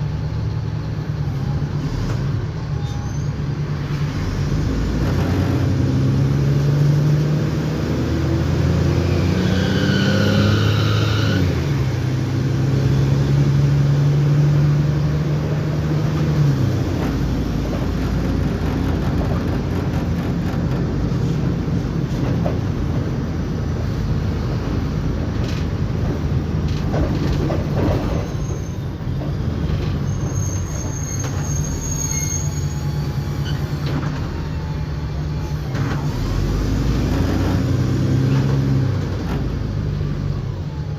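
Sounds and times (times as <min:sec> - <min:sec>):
bus engine: 0:00.0 - 0:40.9
brief high squeal: 0:02.7 - 0:03.4, 0:28.2 - 0:28.8, 0:30.0 - 0:33.8.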